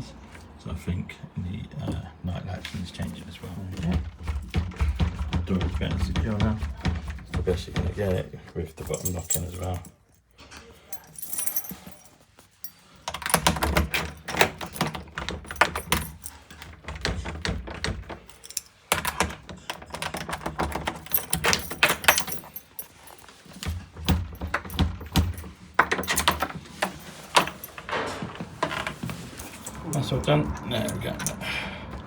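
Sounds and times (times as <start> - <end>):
keys and door lock rattling: 8.8 - 32.0.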